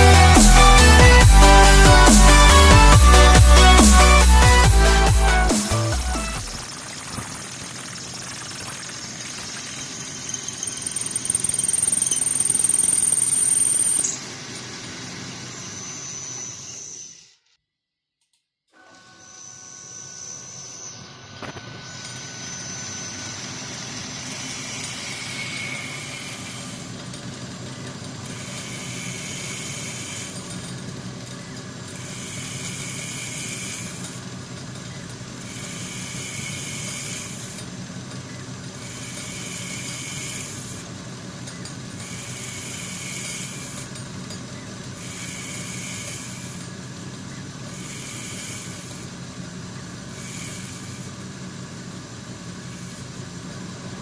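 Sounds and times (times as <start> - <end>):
lathe running: 0.0 - 17.1, 19.4 - 54.0
hissing cutting noise: 0.0 - 17.3, 20.3 - 27.0, 28.2 - 30.6, 32.0 - 34.3, 35.4 - 37.7, 38.7 - 40.9, 42.0 - 43.9, 45.0 - 46.8, 47.6 - 49.1, 50.0 - 51.2.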